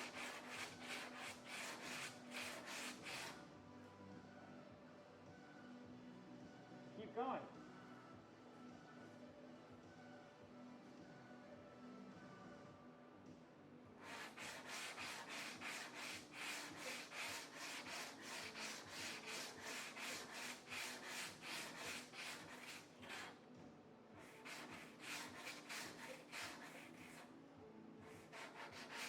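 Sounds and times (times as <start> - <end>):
sandpaper rubbing on metal panel: 0.0 - 3.4, 14.0 - 23.4, 24.2 - 27.2, 28.1 - 29.0.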